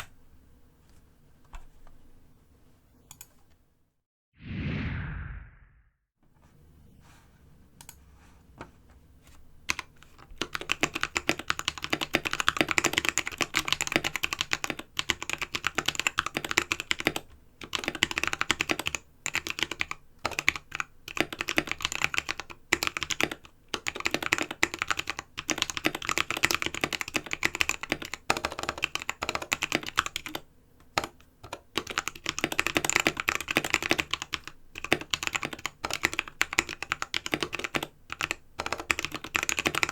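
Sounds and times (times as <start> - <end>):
mechanical keyboard typing: 9.7 - 39.9.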